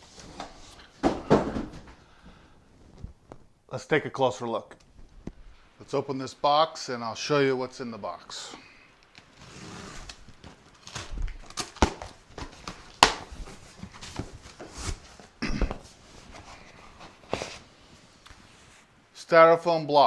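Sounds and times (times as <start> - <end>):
packing rustling and scraping: 9.2 - 18.9
cardboard box being opened: 9.4 - 15.3
sharp crack: 12.9 - 13.3.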